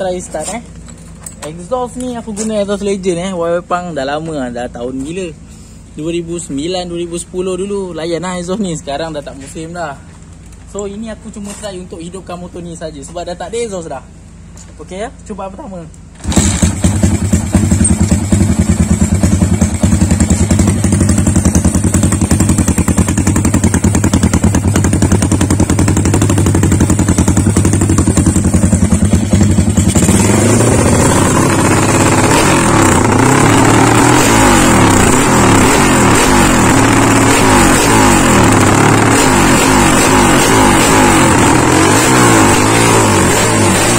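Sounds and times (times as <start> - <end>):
single-cylinder engine running: 16.2 - 43.9.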